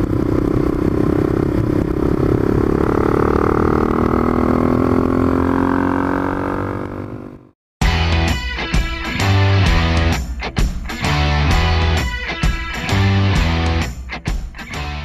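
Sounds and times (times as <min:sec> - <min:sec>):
wind rumbling on microphone: 0:00.0 - 0:07.3
motorcycle engine running: 0:00.0 - 0:07.6.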